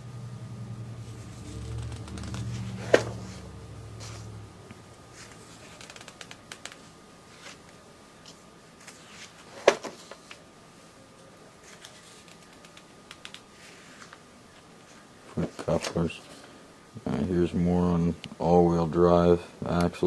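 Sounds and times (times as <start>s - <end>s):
low steady hum: 0.0s - 20.0s
paper pages rustling: 1.2s - 4.3s, 5.1s - 10.4s, 11.6s - 14.2s.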